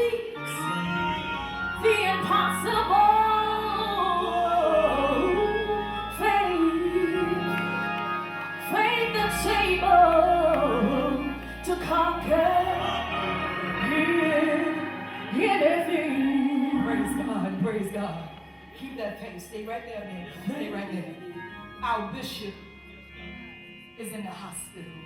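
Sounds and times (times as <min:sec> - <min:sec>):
organ with held bass notes: 0:00.0 - 0:15.3
person singing gospel: 0:02.0 - 0:18.2.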